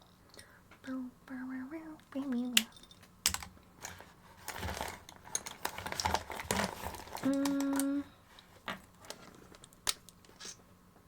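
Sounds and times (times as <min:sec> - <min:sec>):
crinkling and small clicks: 0:03.3 - 0:10.5.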